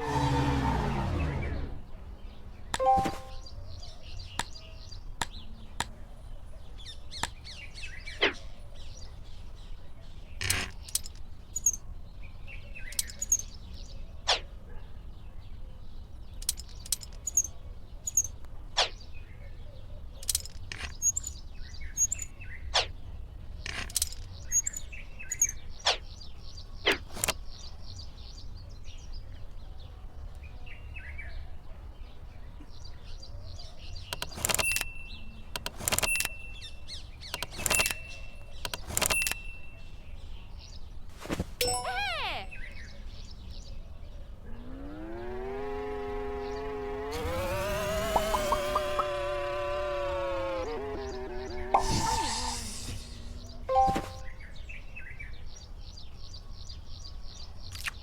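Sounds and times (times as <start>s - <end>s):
birds chirping: 0.0s - 58.0s
sharp clicks and knocks: 34.1s - 34.9s, 37.3s - 39.4s.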